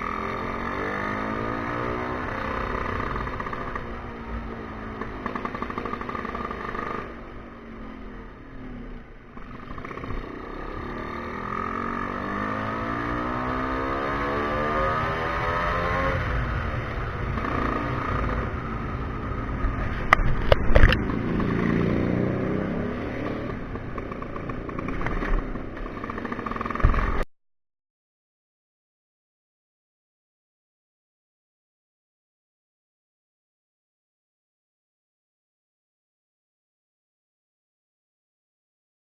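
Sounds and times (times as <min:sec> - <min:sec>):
scooter engine accelerating: 0:00.0 - 0:27.3.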